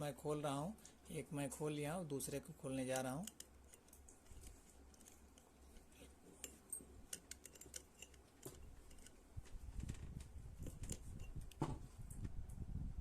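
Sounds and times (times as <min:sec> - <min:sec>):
screwdriver clicking on screw: 0:03.0 - 0:09.2.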